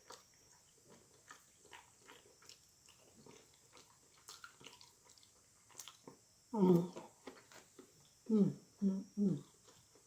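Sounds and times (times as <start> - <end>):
wet chewing and lip-smacking: 0.0 - 6.2.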